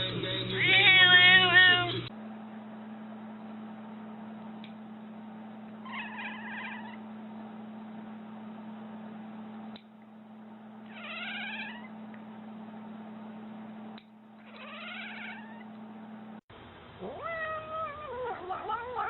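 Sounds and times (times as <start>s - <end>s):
steady low hum: 0.0s - 17.0s
cat meowing: 5.8s - 7.0s, 10.9s - 11.9s, 14.4s - 15.7s, 17.0s - 19.0s.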